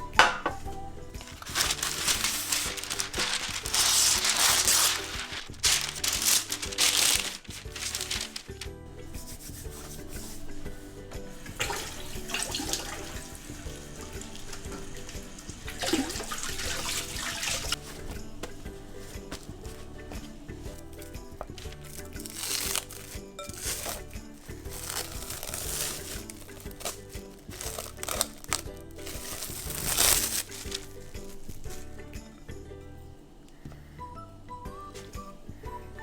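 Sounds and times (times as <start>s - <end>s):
background music: 0.0s - 36.0s
water running from tap: 11.4s - 17.8s.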